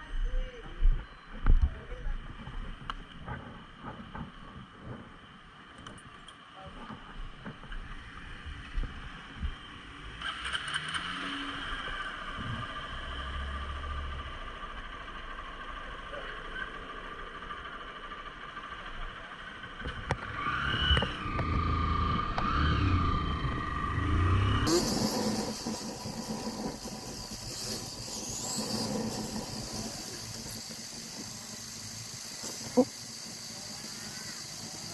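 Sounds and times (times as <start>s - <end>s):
road and wind noise: 0.0s - 34.9s
motorcycle engine revving: 9.9s - 18.8s, 19.8s - 34.9s.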